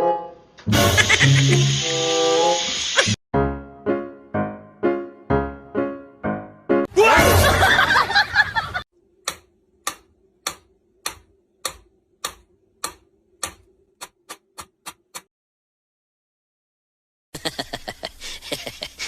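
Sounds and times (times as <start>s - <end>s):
timer ticking: 9.2s - 15.3s.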